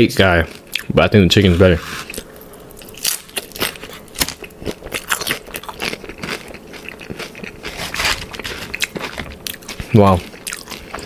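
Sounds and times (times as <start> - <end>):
chewing crunchy chips: 0.2 - 11.0.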